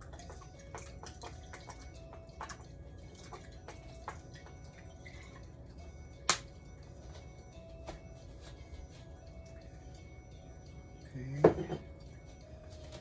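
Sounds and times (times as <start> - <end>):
liquid dripping and splashing: 0.0 - 6.5.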